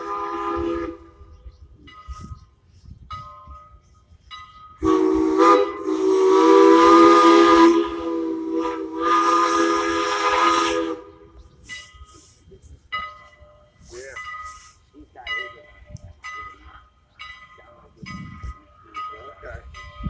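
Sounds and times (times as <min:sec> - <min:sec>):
steam locomotive whistle: 0:00.0 - 0:01.3, 0:04.8 - 0:11.5
locomotive bell ringing: 0:03.1 - 0:06.0, 0:11.1 - 0:20.0
steam hiss: 0:04.8 - 0:13.0, 0:13.8 - 0:15.0.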